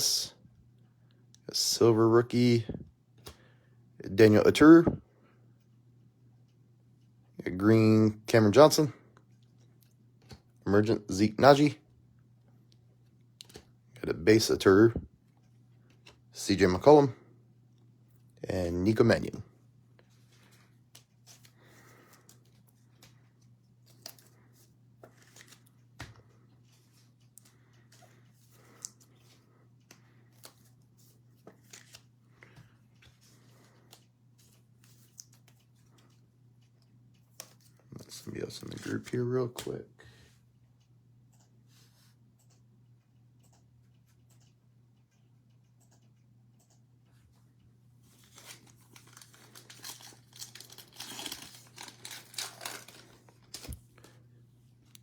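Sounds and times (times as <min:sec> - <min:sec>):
low steady hum: 0:00.0 - 0:55.0
cards clicking and sliding: 0:25.0 - 0:27.5, 0:31.4 - 0:35.6, 0:38.6 - 0:39.8, 0:48.1 - 0:54.1
cellophane wrapper tearing and crinkling: 0:48.2 - 0:53.8.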